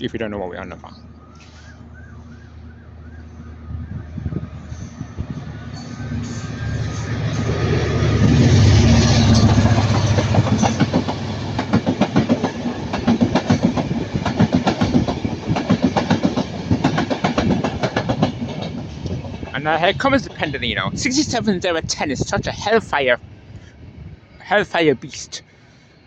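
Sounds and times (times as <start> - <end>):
diesel locomotive engine working: 0.0 - 26.0
train wheels clicking over rail joints: 8.2 - 19.6.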